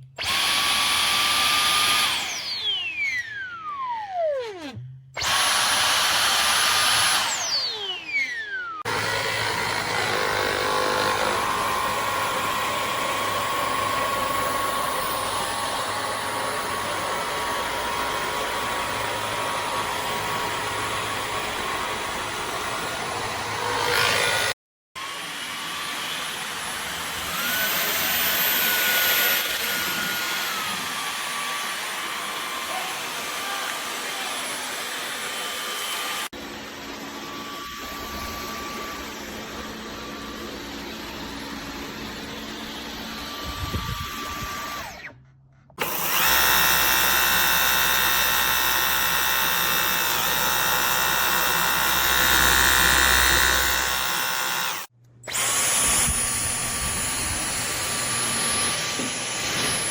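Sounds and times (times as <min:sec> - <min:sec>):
vacuum cleaner motor whine: 0:25.0 - 0:45.1.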